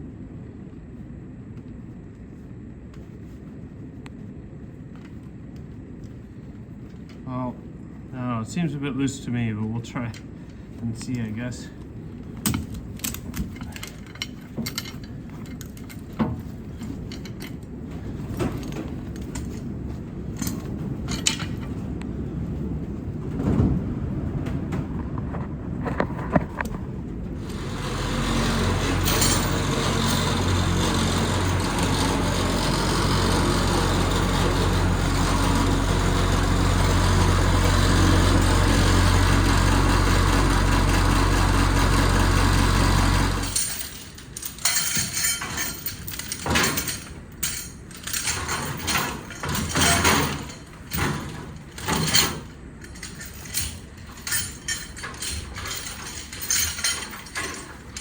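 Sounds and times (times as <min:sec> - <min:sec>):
metal clanks and knocks: 0:12.4 - 0:22.1, 0:23.2 - 0:58.0
diesel engine running: 0:27.2 - 0:43.6.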